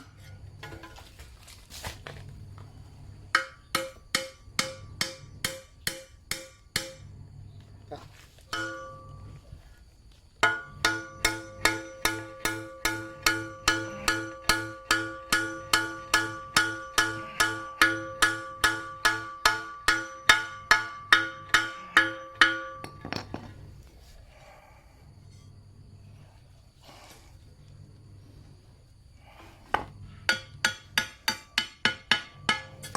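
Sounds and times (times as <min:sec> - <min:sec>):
hammer ringing on metal: 0:03.4 - 0:07.1, 0:08.5 - 0:09.3, 0:10.4 - 0:23.2, 0:30.3 - 0:32.9.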